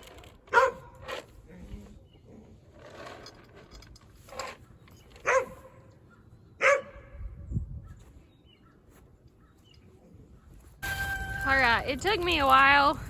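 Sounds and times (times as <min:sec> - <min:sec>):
dog barking: 0:00.5 - 0:00.9, 0:05.2 - 0:05.8, 0:06.6 - 0:07.2.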